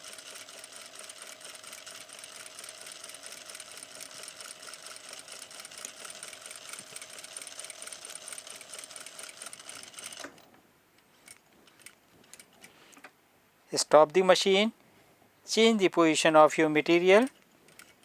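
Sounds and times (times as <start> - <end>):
sewing machine running: 0.0 - 10.3.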